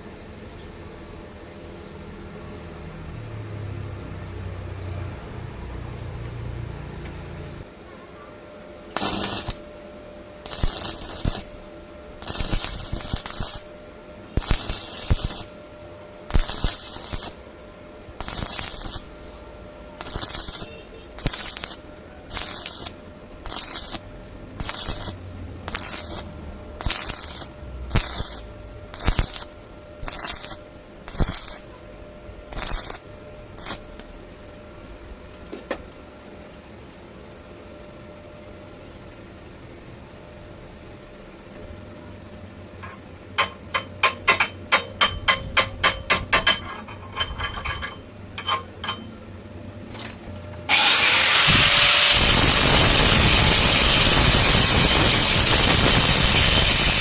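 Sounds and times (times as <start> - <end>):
faint steady hum: 4.8 - 50.7
welding arc crackling and hissing: 8.9 - 9.7, 10.4 - 31.7, 32.5 - 34.2, 50.7 - 57.0.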